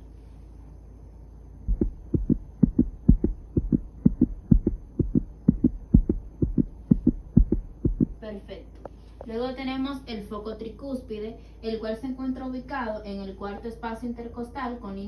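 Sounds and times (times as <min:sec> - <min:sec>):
low steady hum: 0:00.0 - 0:15.0
heartbeat through stethoscope: 0:01.7 - 0:08.2.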